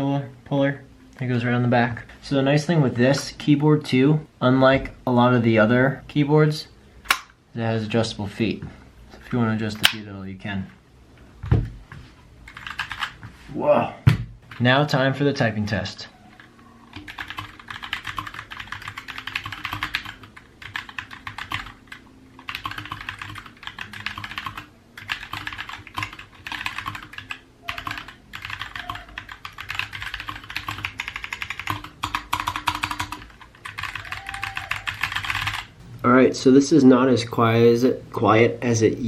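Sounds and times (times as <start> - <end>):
mechanical keyboard typing: 12.5 - 13.2, 16.3 - 35.7.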